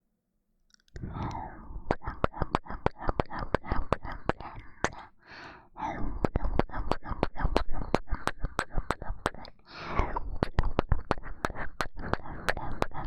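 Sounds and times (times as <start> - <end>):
breathy mouth noise: 1.0 - 13.0
rapid lip smacking kisses: 1.9 - 5.1, 6.2 - 13.0.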